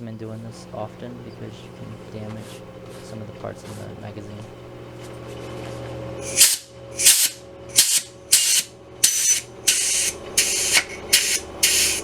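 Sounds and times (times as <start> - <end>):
gas magazine hissing bursts: 6.2 - 12.0.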